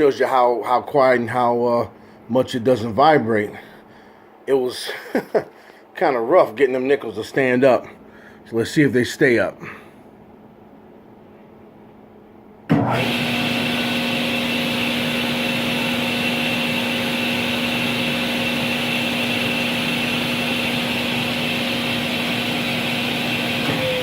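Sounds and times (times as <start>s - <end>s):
table saw motor whining: 12.7s - 24.0s.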